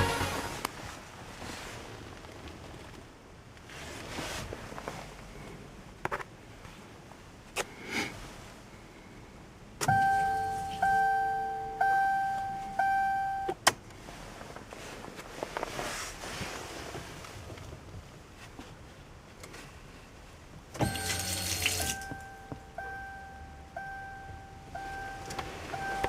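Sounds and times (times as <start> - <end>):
car warning chime: 9.8 - 13.6, 20.8 - 26.0.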